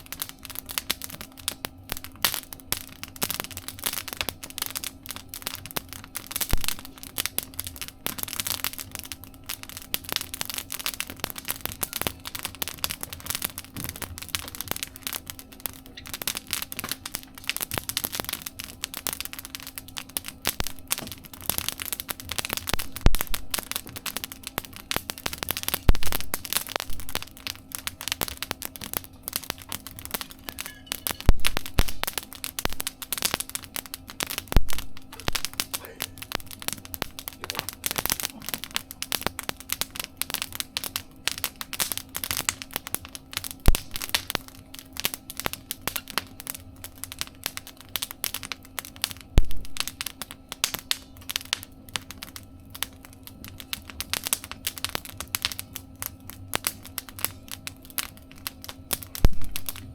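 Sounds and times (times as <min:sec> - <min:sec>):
campfire crackling and popping: 0:00.0 - 0:59.9.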